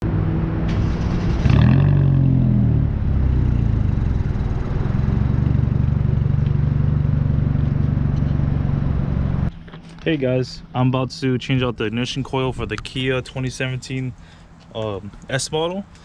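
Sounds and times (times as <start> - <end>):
car engine revving and idling: 0.1 - 9.5.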